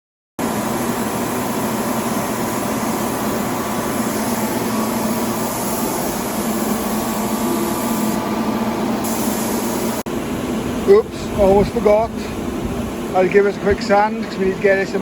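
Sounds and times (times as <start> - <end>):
machine low hum: 0.4 - 15.0
rush of air: 0.5 - 13.2.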